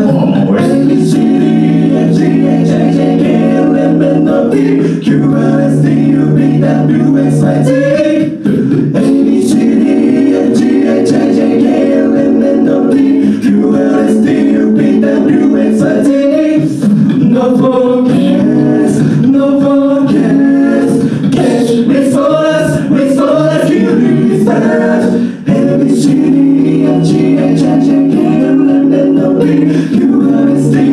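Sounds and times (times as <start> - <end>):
a cappella group singing: 0.0 - 30.9.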